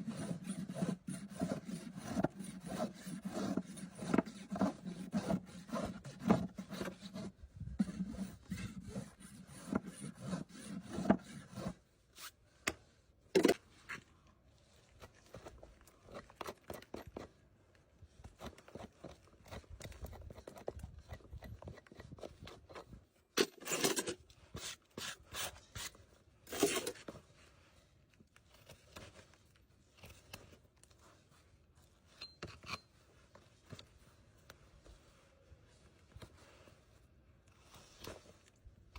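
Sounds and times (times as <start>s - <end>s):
rasp scraping a horse's hoof: 0.0s - 12.4s, 18.4s - 27.2s, 32.1s - 33.0s.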